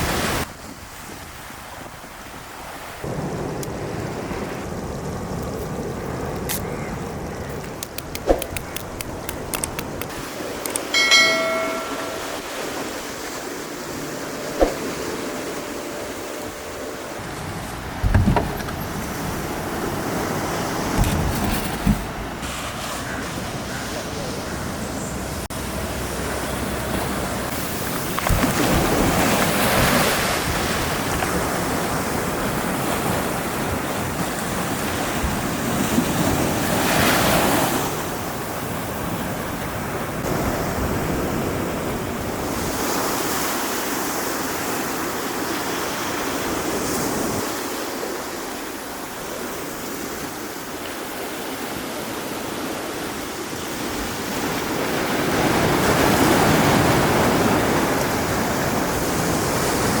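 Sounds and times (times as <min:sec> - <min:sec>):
wind buffeting microphone: 0:00.0 - 0:43.2
sea waves washing onto shore: 0:00.0 - 1:00.0.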